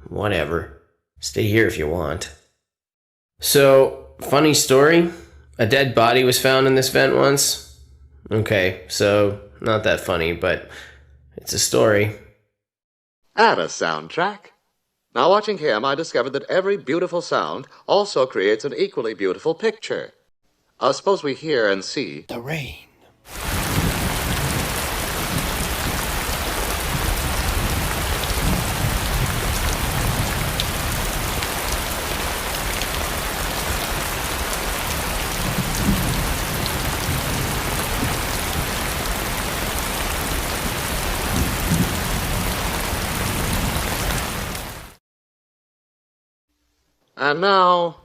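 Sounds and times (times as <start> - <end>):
heavy rain hissing: 23.3 - 44.4.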